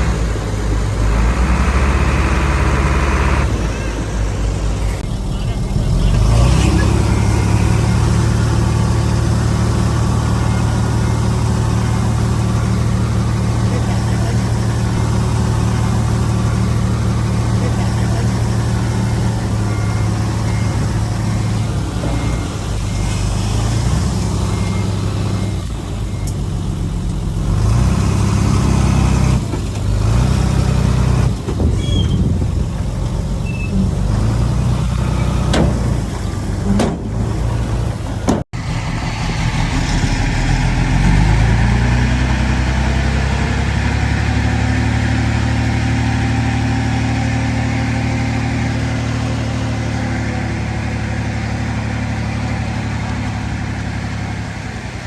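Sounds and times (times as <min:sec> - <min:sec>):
heavy diesel machinery working: 0:00.0 - 0:55.0
reversing alarm beeping: 0:16.4 - 0:26.4.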